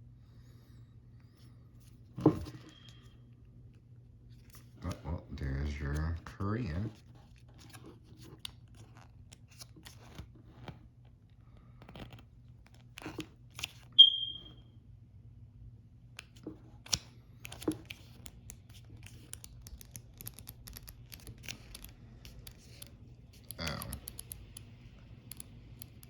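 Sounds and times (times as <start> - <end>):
short high ping: 14.0 - 14.5
paper rustling: 16.2 - 24.6.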